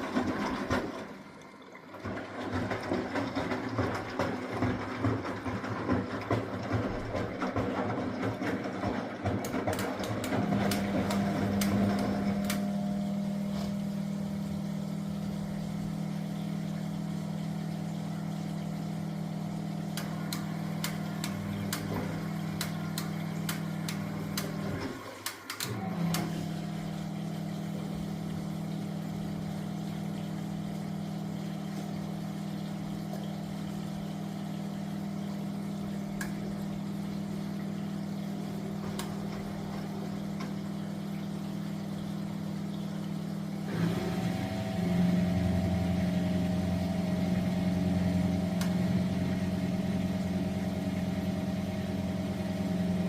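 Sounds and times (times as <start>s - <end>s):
washing machine motor hum: 0.0s - 53.0s
clicks and taps: 5.9s - 12.6s.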